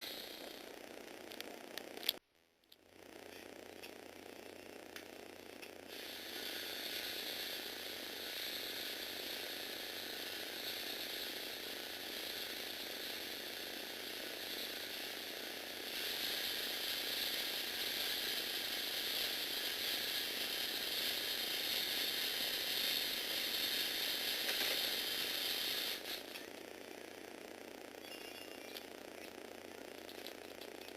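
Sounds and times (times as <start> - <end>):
plastic gears and motor rattling: 0.4 - 26.6, 28.1 - 30.9.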